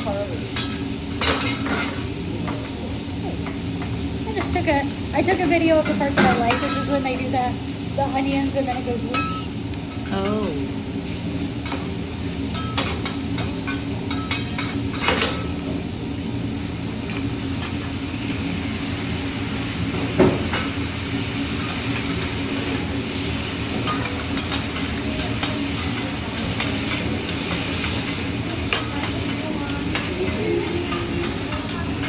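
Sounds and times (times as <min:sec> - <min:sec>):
food sizzling on a griddle: 0:00.0 - 0:32.0
metal spatulas clinking and scraping: 0:23.8 - 0:32.0.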